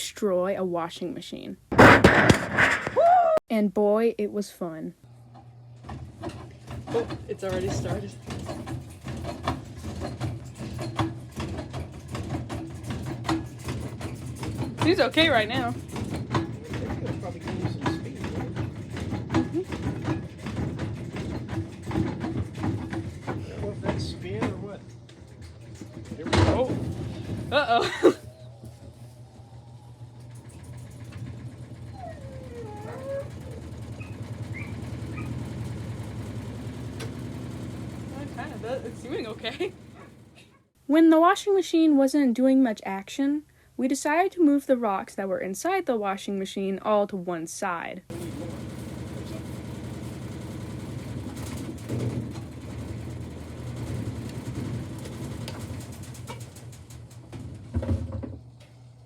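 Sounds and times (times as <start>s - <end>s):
loud bangs: 1.7s - 3.1s
washing machine drum rattling: 5.2s - 40.8s, 48.1s - 59.0s.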